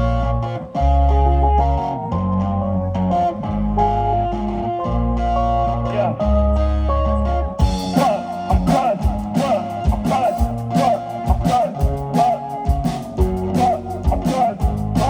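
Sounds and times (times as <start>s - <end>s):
bending guitar notes: 0.0s - 15.0s
steady drum beat: 7.6s - 15.0s.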